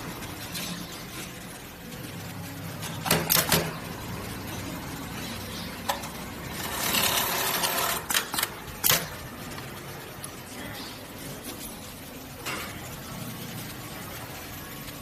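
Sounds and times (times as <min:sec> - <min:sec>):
sewing machine running: 0:06.0 - 0:09.2.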